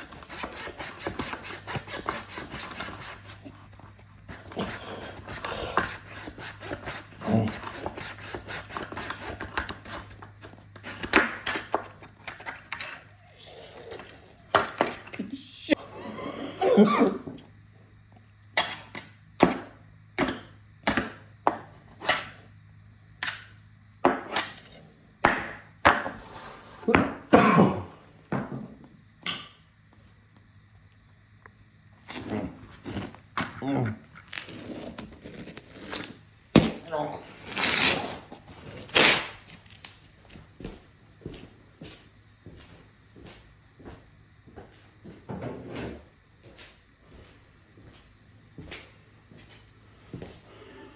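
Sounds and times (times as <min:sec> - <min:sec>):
hand saw cutting wood: 0:00.0 - 0:03.5, 0:04.3 - 0:10.1.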